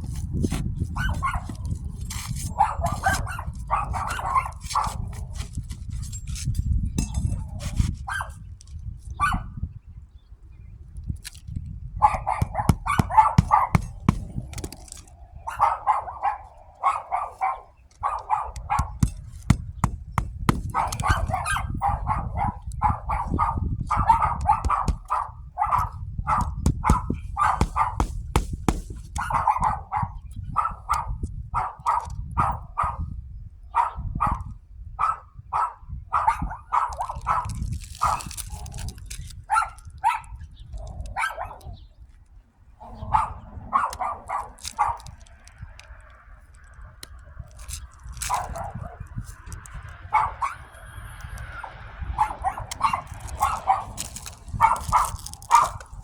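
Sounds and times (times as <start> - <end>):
dog barking: 1.0 - 1.6, 2.5 - 5.0, 12.0 - 14.0, 15.4 - 19.2, 20.6 - 28.5, 29.2 - 33.1, 33.7 - 38.2, 39.5 - 40.3, 41.1 - 41.8, 42.8 - 45.2, 48.3 - 49.1, 50.0 - 50.8, 51.5 - 55.9.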